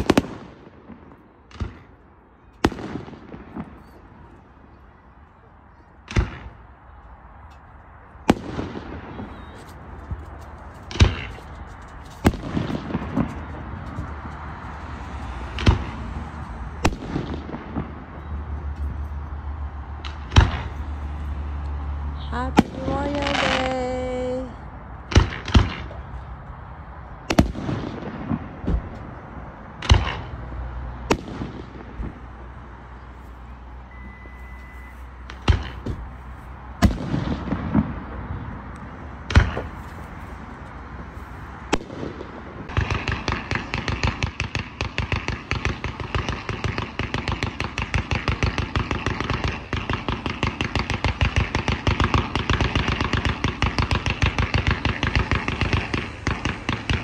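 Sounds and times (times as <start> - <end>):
rapid firework crackling: 0.0 - 1.9, 8.3 - 18.1, 41.5 - 57.0
firework bangs echoing: 0.0 - 4.7, 6.0 - 6.7, 8.2 - 18.4, 19.9 - 21.2, 22.3 - 26.0, 27.2 - 32.8, 35.2 - 39.9, 41.5 - 57.0.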